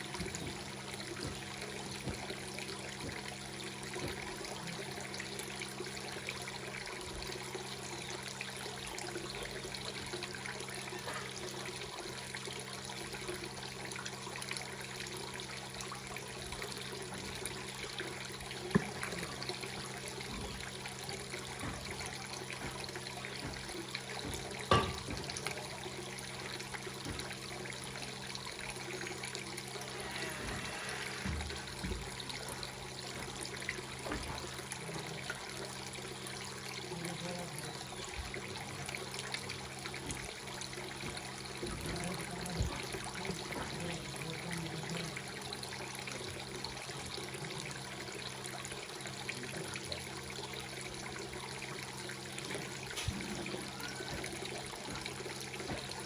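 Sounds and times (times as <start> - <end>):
water trickling and splashing: 0.0 - 56.0
sharp knocks: 21.6 - 25.6.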